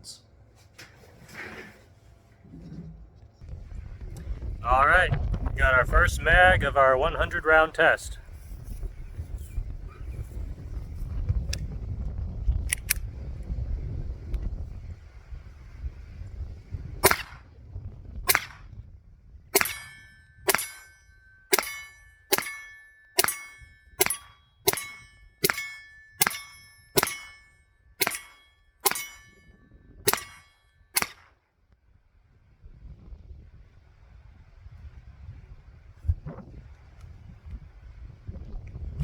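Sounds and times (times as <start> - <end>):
pistol shots with metallic ring: 17.0 - 17.4, 18.3 - 18.6, 19.6 - 31.4.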